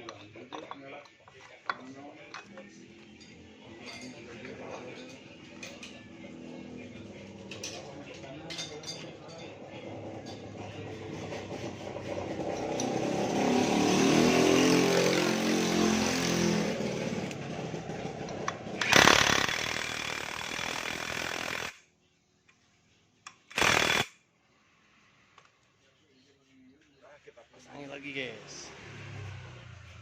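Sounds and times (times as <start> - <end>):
motor running loudly: 18.4 - 21.8.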